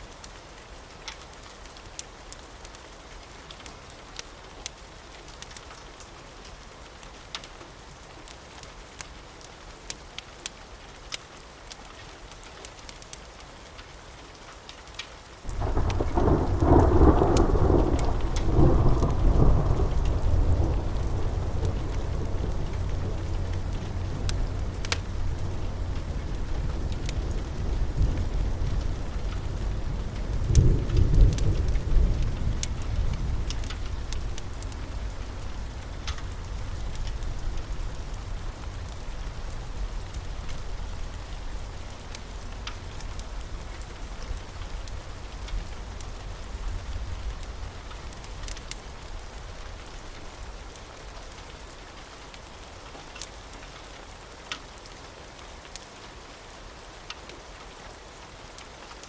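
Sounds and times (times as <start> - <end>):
rain falling: 0.0 - 59.0
thunder rumbling: 15.5 - 50.4.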